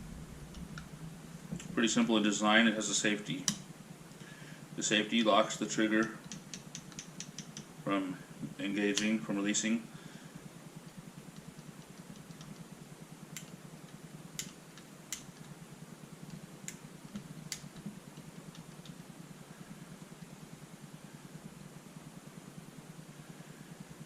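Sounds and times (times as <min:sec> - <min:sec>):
steady low hum: 0:00.0 - 0:24.0
sharp light clicks of small parts: 0:06.0 - 0:07.7, 0:08.9 - 0:09.2, 0:10.8 - 0:12.7, 0:13.3 - 0:15.5, 0:16.3 - 0:19.0.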